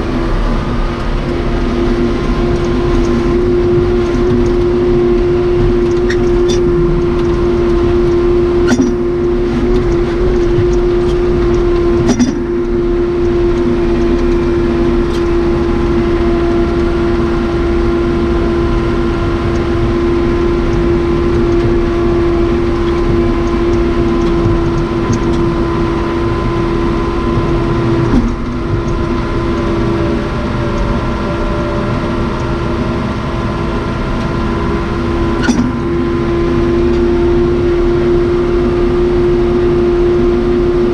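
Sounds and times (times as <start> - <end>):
diesel engine droning: 0.0 - 40.9
sharp clicks or knocks: 2.6 - 14.5.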